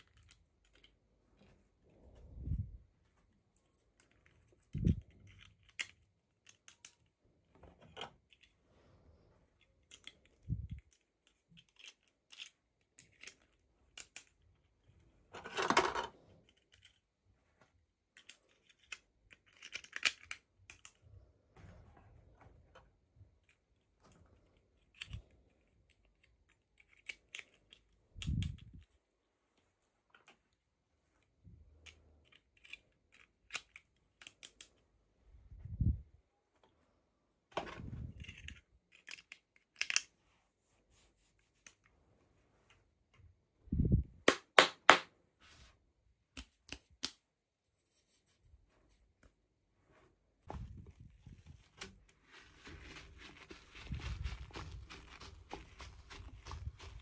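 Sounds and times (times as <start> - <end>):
plastic and cardboard clicks: 44.2 - 45.1
crinkling packaging: 51.3 - 57.0.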